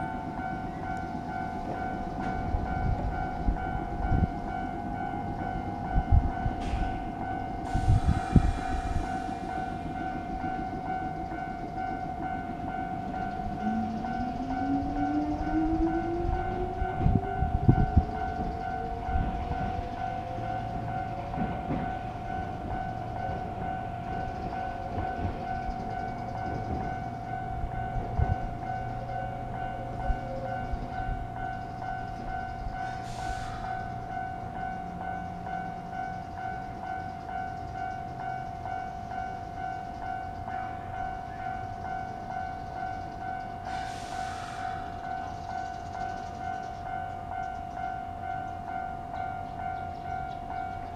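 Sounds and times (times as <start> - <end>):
electric train motor whine: 0.0 - 49.0
level crossing warning bell: 0.0 - 50.9
wheels clicking over rail joints: 9.8 - 50.9
brief hisses: 43.7 - 44.9.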